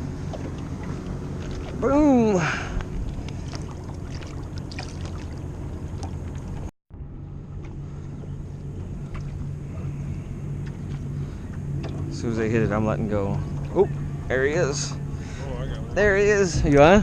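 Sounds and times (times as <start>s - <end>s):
boat motor humming: 0.0s - 17.0s
water noise: 0.0s - 17.0s
wind noise: 15.6s - 17.0s.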